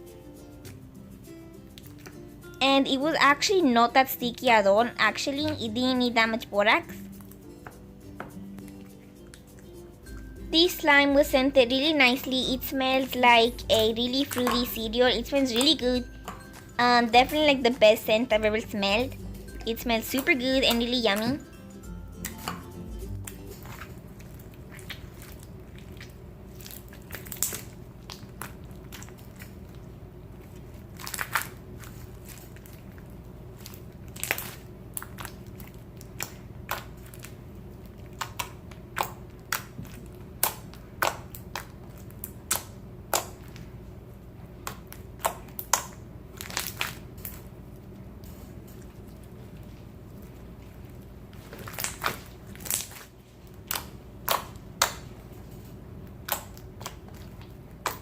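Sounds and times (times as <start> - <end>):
slime popping and crackling: 12.6 - 16.1, 23.4 - 29.8, 30.5 - 43.7, 44.6 - 47.4, 51.4 - 55.1.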